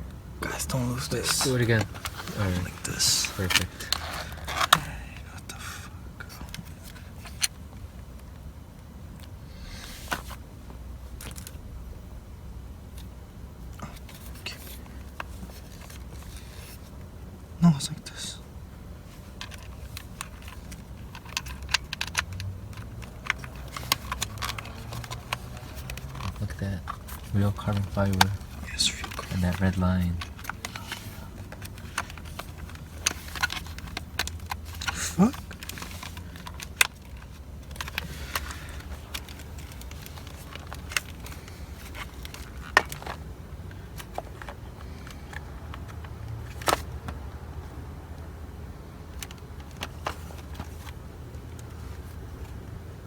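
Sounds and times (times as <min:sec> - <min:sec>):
low steady hum: 0:00.0 - 0:53.0
clicks and knocks of small parts: 0:19.4 - 0:43.2.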